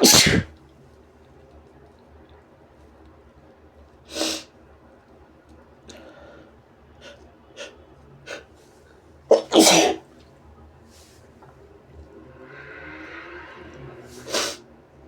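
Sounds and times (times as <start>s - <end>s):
man sneezing: 0.0s - 0.5s, 9.3s - 10.0s.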